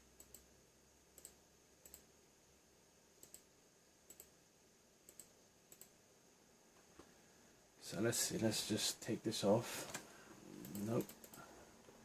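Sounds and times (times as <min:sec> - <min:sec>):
faint computer mouse clicks: 0:00.2 - 0:00.5, 0:01.2 - 0:02.1, 0:03.2 - 0:03.5, 0:04.1 - 0:04.4, 0:05.1 - 0:06.0, 0:09.9 - 0:11.5.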